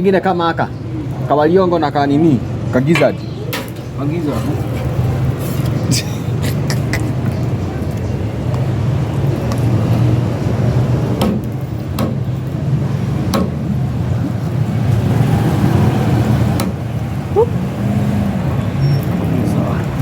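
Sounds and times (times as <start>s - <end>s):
low rumble of street traffic: 0.0s - 20.0s
sharp knocks: 11.2s - 12.2s, 13.3s - 13.6s.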